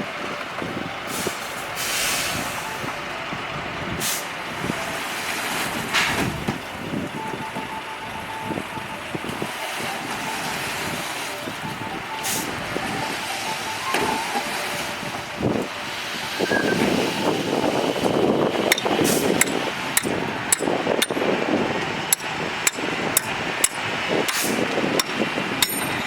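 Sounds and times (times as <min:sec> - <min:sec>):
diesel engines of heavy trucks: 0:00.0 - 0:26.0
air brakes hissing: 0:01.1 - 0:02.9, 0:03.9 - 0:05.0, 0:12.2 - 0:12.6, 0:16.3 - 0:20.7, 0:22.6 - 0:26.0.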